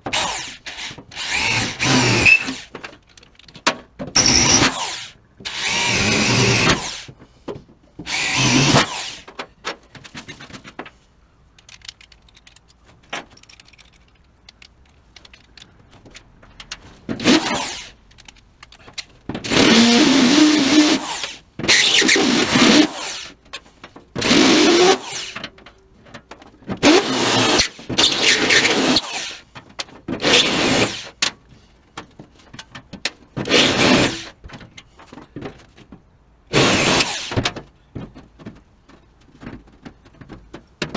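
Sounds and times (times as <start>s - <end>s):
power drill drilling: 0.0s - 2.7s, 4.2s - 7.1s, 8.1s - 9.3s, 17.2s - 18.0s, 19.4s - 23.4s, 24.2s - 25.4s, 26.8s - 29.5s, 30.2s - 31.2s, 33.5s - 34.3s, 36.5s - 37.4s.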